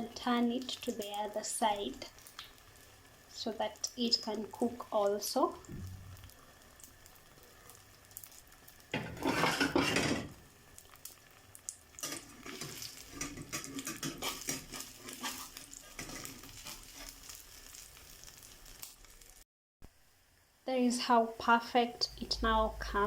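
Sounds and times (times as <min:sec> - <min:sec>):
food sizzling in oil: 0:00.0 - 0:23.0
utensil clicking against pan: 0:11.6 - 0:16.4.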